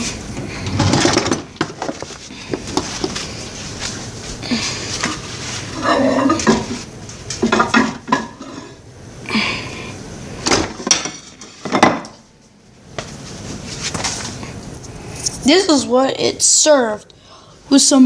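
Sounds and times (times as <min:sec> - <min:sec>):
plate and cutlery clattering: 0:05.8 - 0:06.8, 0:07.4 - 0:08.7, 0:10.8 - 0:12.1.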